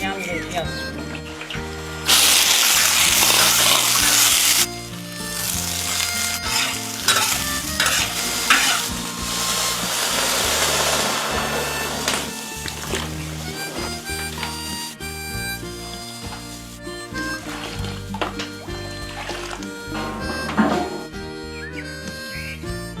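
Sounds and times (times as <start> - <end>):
food sizzling in hot oil: 2.0 - 14.7.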